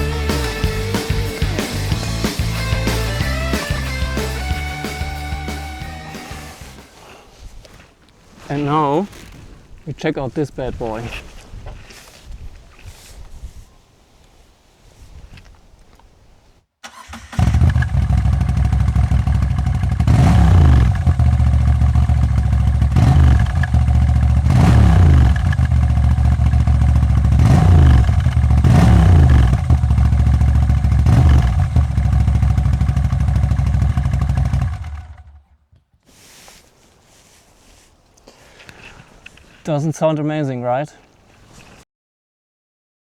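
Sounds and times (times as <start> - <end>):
motorcycle engine idling and revving: 0.0 - 7.0, 16.8 - 35.7.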